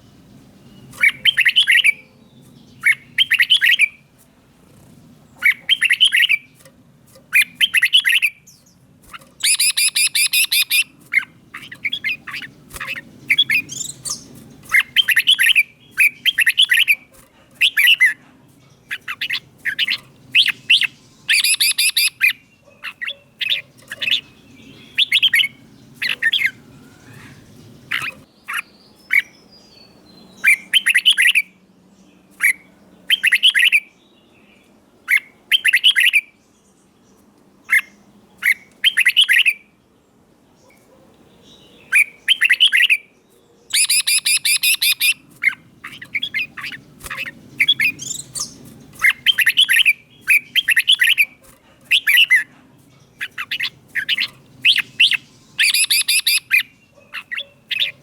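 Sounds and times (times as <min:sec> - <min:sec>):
bird whistled phrases: 0:02.9 - 0:04.0, 0:09.4 - 0:10.9, 0:19.2 - 0:22.3, 0:43.7 - 0:45.2, 0:53.2 - 0:58.0
rapid buzzy bird runs: 0:44.6 - 0:55.1.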